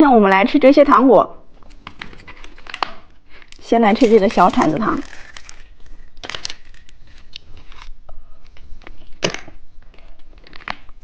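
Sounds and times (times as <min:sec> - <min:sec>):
candy packaging crinkling: 0:01.7 - 0:07.9
packaging cracking: 0:01.8 - 0:07.9.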